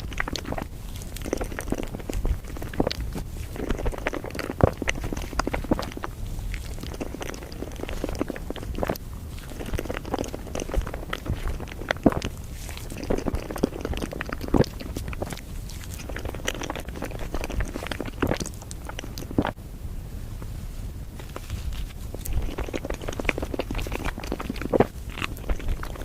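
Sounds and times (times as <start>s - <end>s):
bites crunching: 0.0s - 19.6s, 21.2s - 26.0s
person chewing: 0.0s - 19.6s, 21.2s - 26.0s.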